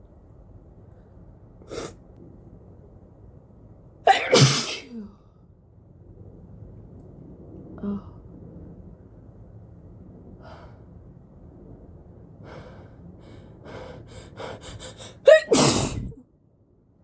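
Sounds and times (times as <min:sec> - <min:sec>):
person sneezing loudly: 0:04.1 - 0:04.9, 0:15.1 - 0:16.2
person catching breaths: 0:13.7 - 0:16.2.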